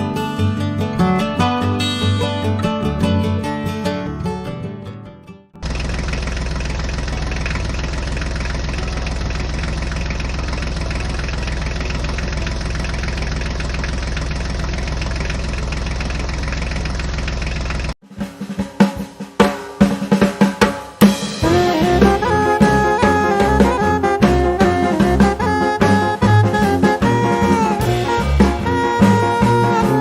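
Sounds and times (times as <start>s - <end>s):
engine idling: 5.6s - 18.0s, 21.4s - 30.0s.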